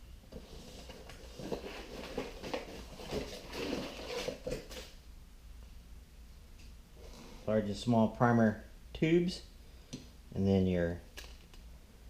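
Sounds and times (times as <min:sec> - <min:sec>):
packaging rustling: 0:00.4 - 0:04.9.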